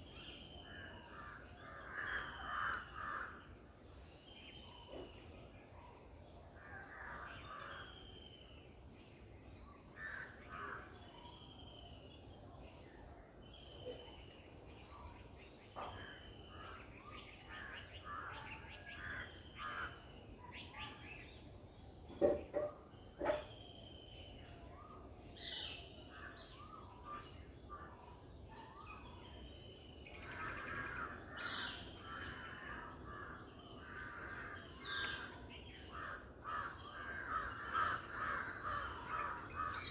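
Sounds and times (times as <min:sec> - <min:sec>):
crows cawing: 0:01.7 - 0:03.4, 0:30.5 - 0:39.9.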